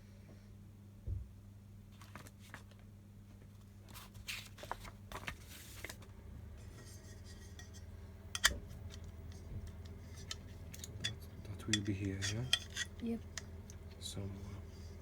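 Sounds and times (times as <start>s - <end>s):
steady low hum: 0.0s - 15.0s
metal parts clinking and rattling: 8.4s - 13.0s.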